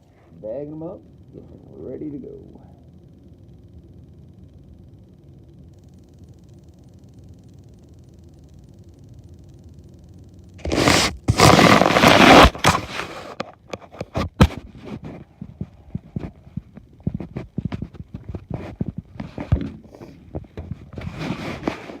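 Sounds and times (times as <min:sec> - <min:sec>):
plastic rustle: 0:10.6 - 0:13.5.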